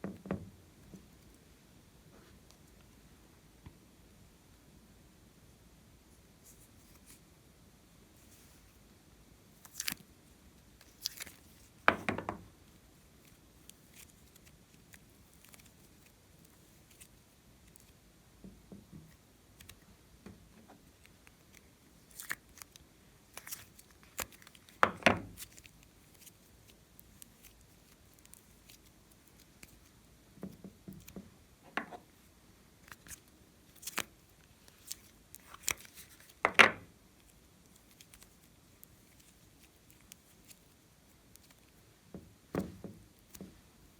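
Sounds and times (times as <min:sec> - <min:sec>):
slime clicking and crackling: 0:21.0 - 0:29.9, 0:32.8 - 0:36.4, 0:37.2 - 0:41.8.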